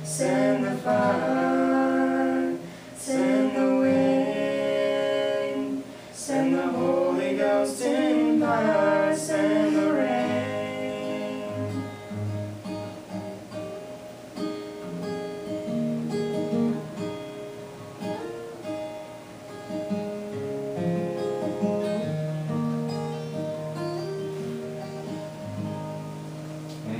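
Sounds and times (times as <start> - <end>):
duet singing with vibrato: 0.0 - 12.6
acoustic guitar: 0.0 - 26.9.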